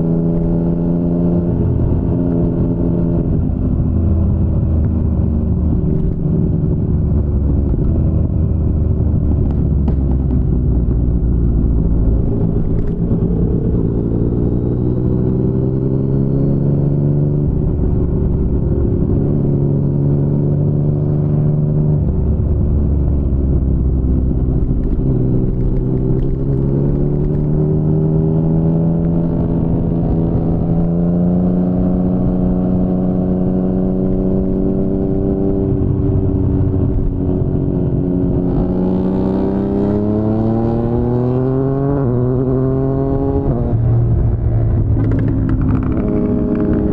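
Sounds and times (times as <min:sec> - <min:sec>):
motorcycle engine accelerating: 0:00.0 - 0:46.9.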